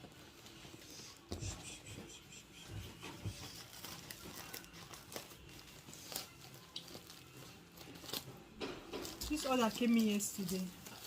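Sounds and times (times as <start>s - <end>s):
packaging crinkling: 3.3s - 11.0s
packaging tearing: 3.6s - 8.4s.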